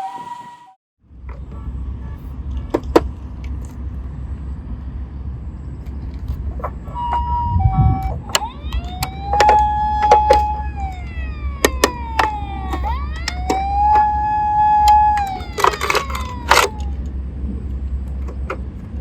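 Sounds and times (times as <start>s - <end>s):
low engine rumble: 1.0s - 19.0s
emergency vehicle siren: 6.5s - 18.0s
sharp clicks: 8.0s - 14.1s, 14.8s - 17.1s.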